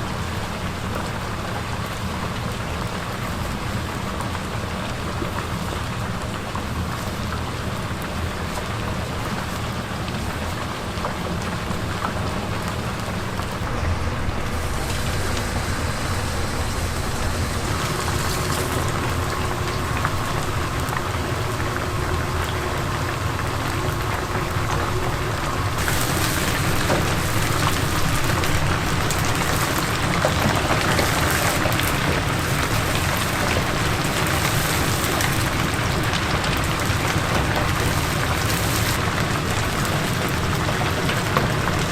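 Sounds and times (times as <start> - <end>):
chicken sizzling in deep-frying oil: 0.0 - 41.9
low hum: 13.4 - 22.9.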